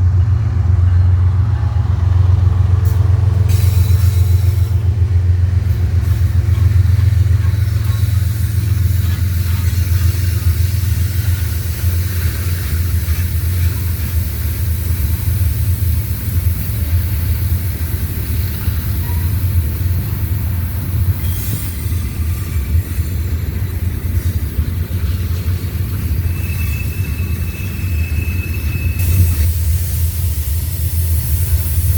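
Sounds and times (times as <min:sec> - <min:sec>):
train wheels rumbling on rail: 0:00.0 - 0:31.9
train hiss: 0:02.7 - 0:31.9.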